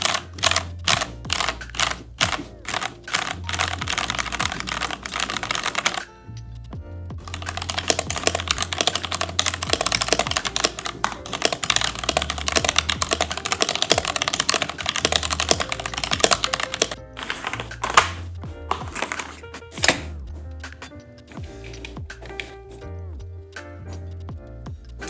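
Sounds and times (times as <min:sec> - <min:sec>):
keyboard clack: 0:00.0 - 0:06.1, 0:07.2 - 0:22.6
mechanical keyboard typing: 0:00.0 - 0:06.1, 0:07.2 - 0:20.1
background music with bass: 0:00.0 - 0:25.0.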